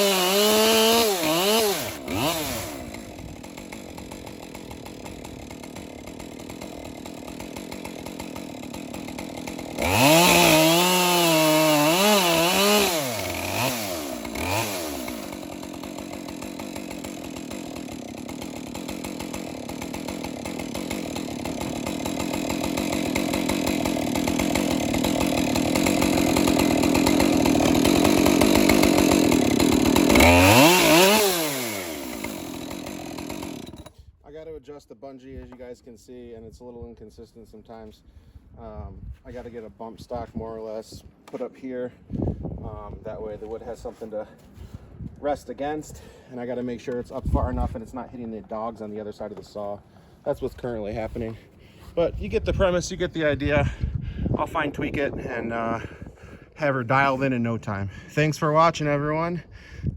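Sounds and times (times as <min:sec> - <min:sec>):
chainsaw idling and revving: 0:00.0 - 0:34.0, 0:45.2 - 0:53.6, 0:54.4 - 0:59.6.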